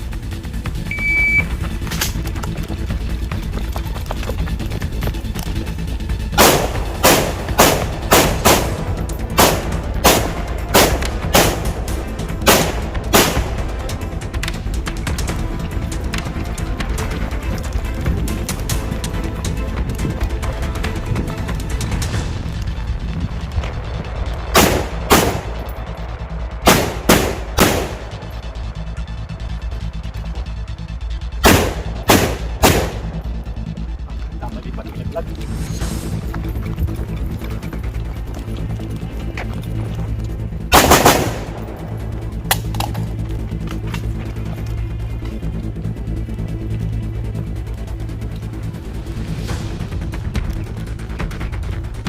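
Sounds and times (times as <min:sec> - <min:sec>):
low background music: 0:00.0 - 0:52.0
rifle shots with echo: 0:06.4 - 0:13.7, 0:24.5 - 0:25.7, 0:26.6 - 0:28.3, 0:31.4 - 0:33.2, 0:40.7 - 0:41.9.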